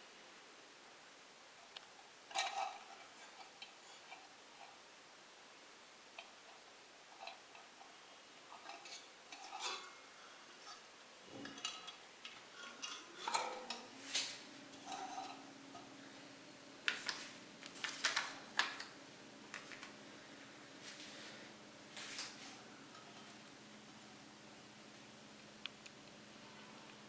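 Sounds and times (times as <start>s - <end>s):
metal plates clinking and clattering: 2.3s - 4.7s, 8.5s - 15.9s.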